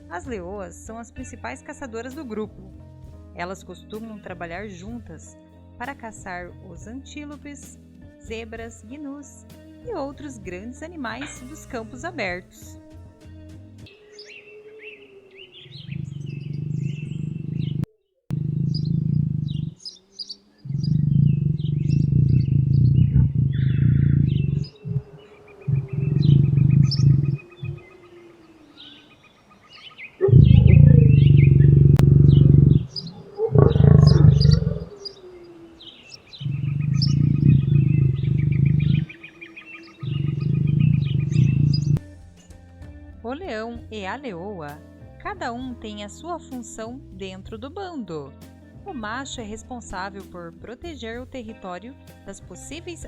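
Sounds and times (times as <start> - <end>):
lion roaring: 13.9 - 17.8, 18.4 - 29.3, 30.2 - 42.0
small birds chirping: 13.9 - 42.6.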